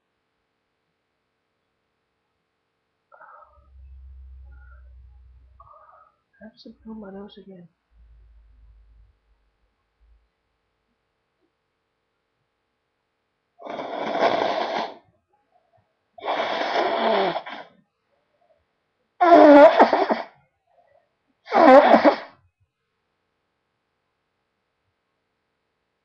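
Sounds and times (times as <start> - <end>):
person blowing nose: 13.6 - 15.0, 16.2 - 17.7, 19.2 - 20.4, 21.5 - 22.4.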